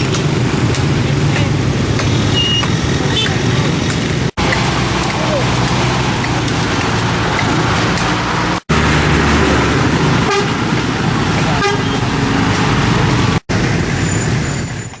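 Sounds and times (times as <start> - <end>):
vehicle engines running: 0.0 - 15.0
car horn: 10.2 - 10.7, 11.4 - 12.4.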